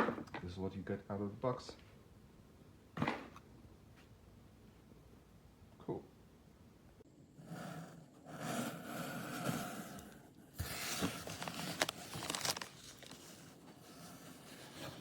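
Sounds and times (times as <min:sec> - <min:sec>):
packaging crinkling: 0:10.8 - 0:13.6.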